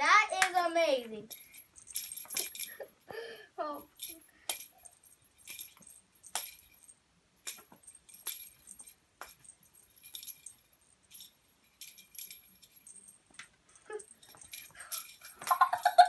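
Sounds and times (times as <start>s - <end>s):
cat toy jingling: 0.1s - 16.0s.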